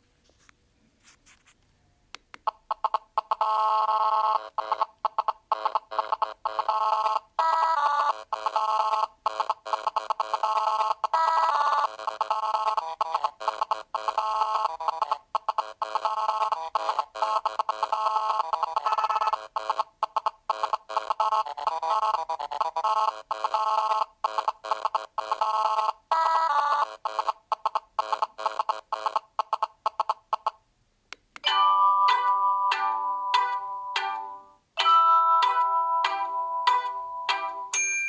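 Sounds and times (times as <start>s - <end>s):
phone ringtone electronic melody: 5.5s - 29.2s, 31.4s - 38.0s.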